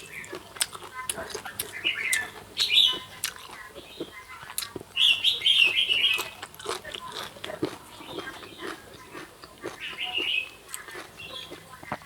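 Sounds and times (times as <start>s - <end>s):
bird chirping: 1.5s - 6.4s, 7.8s - 12.0s.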